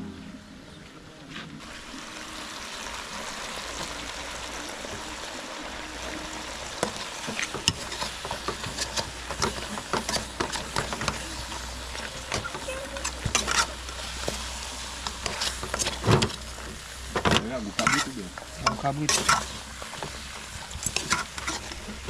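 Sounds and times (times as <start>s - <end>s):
meat sizzling in a pot: 1.6s - 22.0s
utensil scraping a pot: 7.3s - 16.5s, 17.7s - 20.1s, 20.7s - 22.0s.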